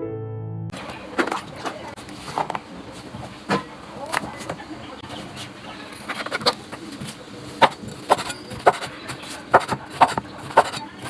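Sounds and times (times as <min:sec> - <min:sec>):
knife chopping on wooden board: 0:07.6 - 0:10.8.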